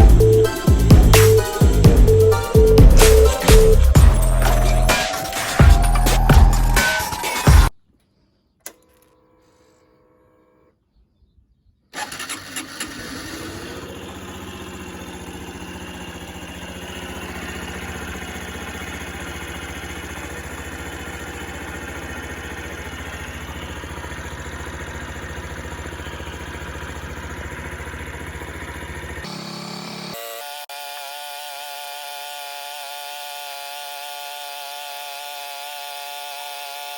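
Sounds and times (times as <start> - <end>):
motorcycle engine idling: 0.0 - 7.7, 12.0 - 30.2.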